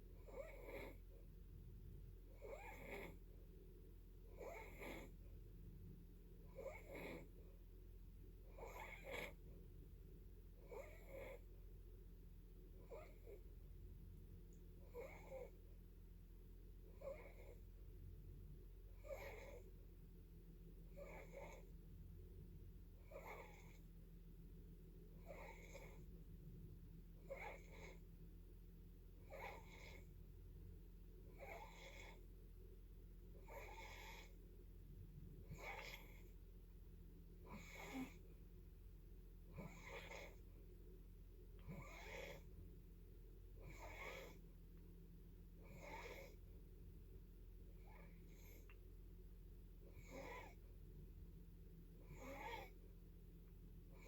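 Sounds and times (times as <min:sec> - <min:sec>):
steady low hum: 0:00.0 - 0:54.0
wheezy snoring: 0:00.2 - 0:01.1, 0:02.3 - 0:03.2, 0:04.3 - 0:05.2, 0:06.5 - 0:07.4, 0:08.5 - 0:09.5, 0:10.6 - 0:11.5, 0:12.8 - 0:13.4, 0:14.8 - 0:15.6, 0:16.9 - 0:17.6, 0:19.0 - 0:19.7, 0:20.9 - 0:21.7, 0:23.0 - 0:23.9, 0:25.2 - 0:26.1, 0:27.2 - 0:28.0, 0:29.2 - 0:30.1, 0:31.3 - 0:32.2, 0:33.4 - 0:34.4, 0:35.4 - 0:36.3, 0:37.4 - 0:38.2, 0:39.5 - 0:40.5, 0:41.6 - 0:42.6, 0:43.6 - 0:44.4, 0:45.6 - 0:46.4, 0:47.8 - 0:48.8, 0:49.8 - 0:50.7, 0:52.0 - 0:52.8.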